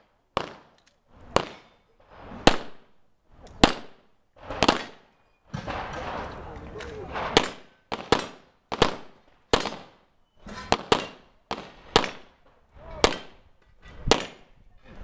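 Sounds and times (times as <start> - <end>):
pistol shots: 0.4 - 2.8, 3.6 - 10.0, 10.7 - 12.4, 13.0 - 13.5, 14.1 - 14.5.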